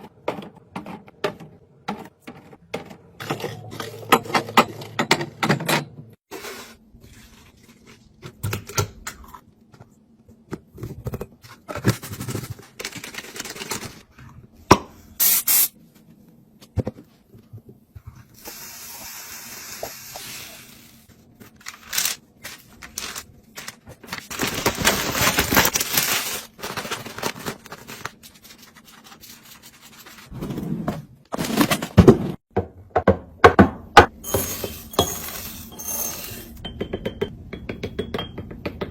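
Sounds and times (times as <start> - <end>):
items scraping and knocking: 0.0 - 14.5, 21.1 - 33.1, 34.0 - 37.2
plastic wrappers rustling: 21.5 - 30.2.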